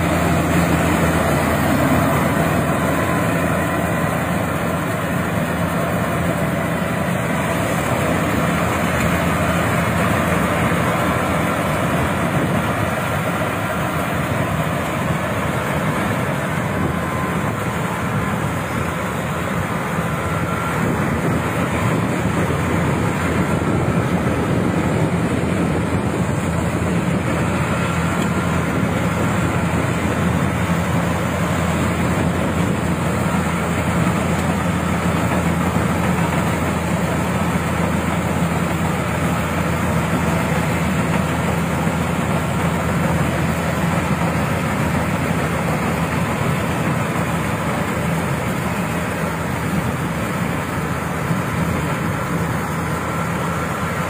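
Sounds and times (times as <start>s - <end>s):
combine harvester engine hum: 0.0s - 54.0s.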